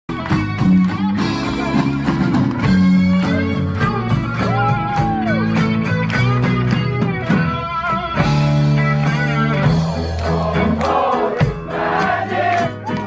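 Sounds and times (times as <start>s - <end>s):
rock music with guitar: 0.1s - 13.0s
steady drum beat: 0.1s - 13.0s.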